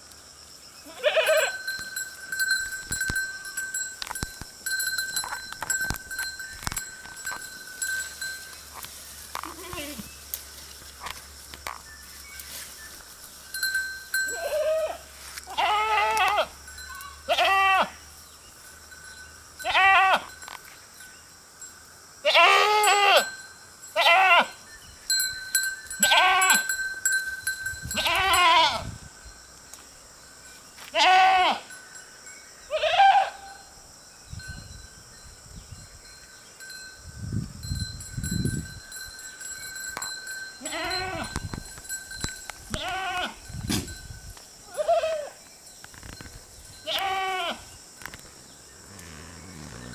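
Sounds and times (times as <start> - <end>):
goats bleating: 9.4 - 10.1, 14.3 - 18.0, 26.0 - 26.7, 31.0 - 31.6, 42.7 - 43.4.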